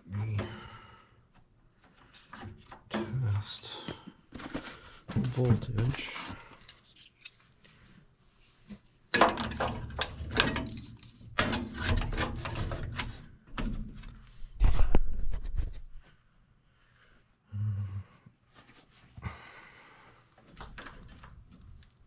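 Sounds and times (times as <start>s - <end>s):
handling clatter and knocks: 4.3s - 6.2s.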